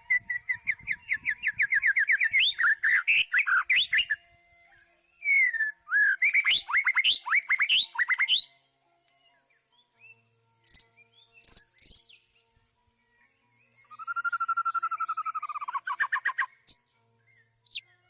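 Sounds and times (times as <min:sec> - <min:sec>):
bird singing whistled notes: 0:00.0 - 0:18.0.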